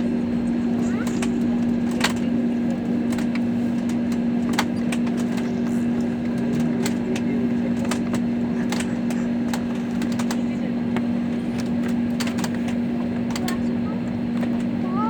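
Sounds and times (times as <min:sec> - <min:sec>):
airliner cabin hum: 0:00.0 - 0:15.0.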